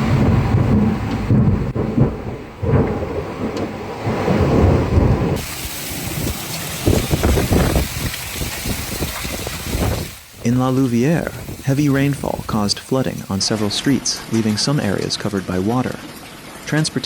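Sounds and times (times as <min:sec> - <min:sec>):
thunder rumbling: 0:00.0 - 0:14.4
heavy rain hissing: 0:03.8 - 0:17.0.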